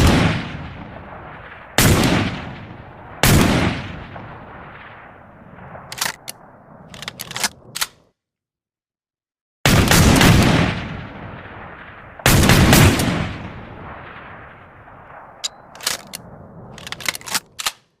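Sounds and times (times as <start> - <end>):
sharp clicks: 5.9 - 8.1, 15.4 - 17.9.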